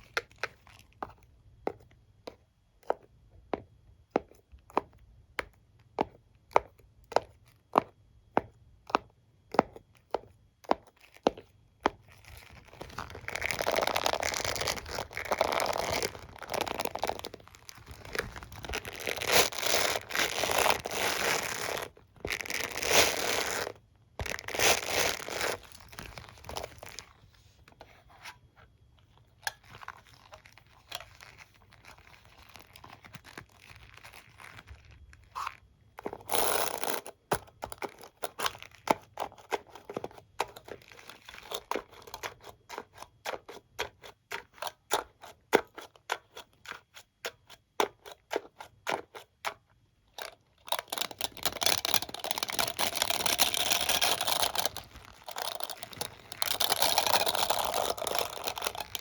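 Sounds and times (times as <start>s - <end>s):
comb scratching: 12.6s - 27.2s, 50.8s - 59.0s.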